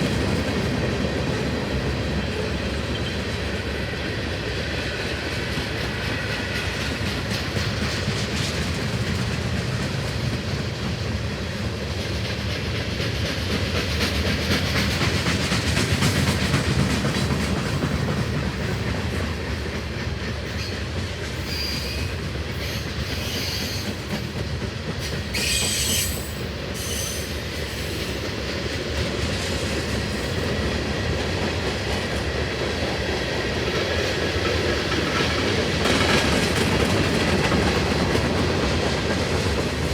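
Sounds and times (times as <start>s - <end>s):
train cars rumbling past: 0.0s - 39.9s
wheel squeals: 25.4s - 27.3s
wheels clicking over rail joints: 28.0s - 39.9s.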